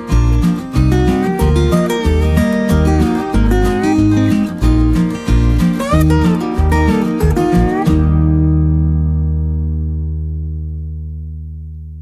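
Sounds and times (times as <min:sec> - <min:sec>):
guitar background music: 0:00.0 - 0:12.0.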